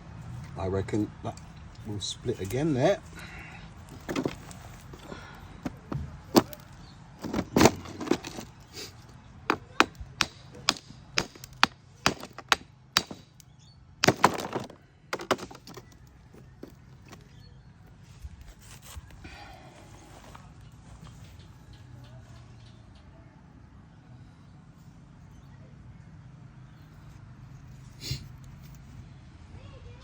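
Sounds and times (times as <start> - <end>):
hammer striking stone: 9.5 - 13.4, 14.0 - 15.9.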